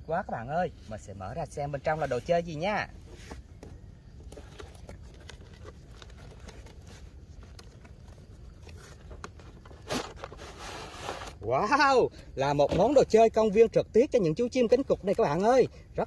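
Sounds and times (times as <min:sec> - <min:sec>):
cardboard rustle: 0:02.0 - 0:11.4.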